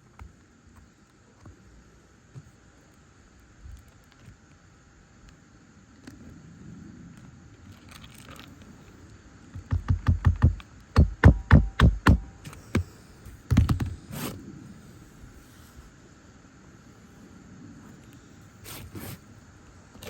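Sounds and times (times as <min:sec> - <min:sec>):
rapid hard knocks: 0:09.6 - 0:12.9.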